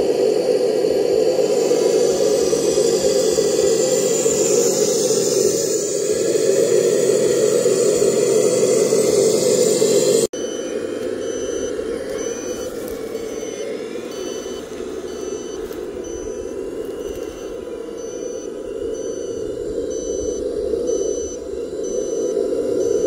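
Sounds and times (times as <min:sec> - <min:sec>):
toy truck engine running: 0:00.0 - 0:22.1
high reversing beeps: 0:00.0 - 0:23.0.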